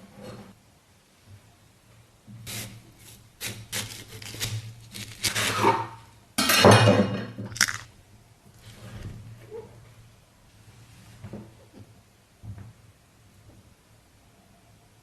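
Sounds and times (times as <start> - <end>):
close-miked eating crackles: 3.8 - 5.6, 7.5 - 8.0.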